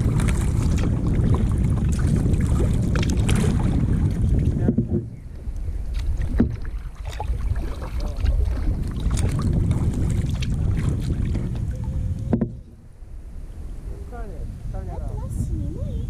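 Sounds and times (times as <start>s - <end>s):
paddle splashes and knocks: 0.0s - 12.8s
wind rumbling on microphone: 0.0s - 16.0s.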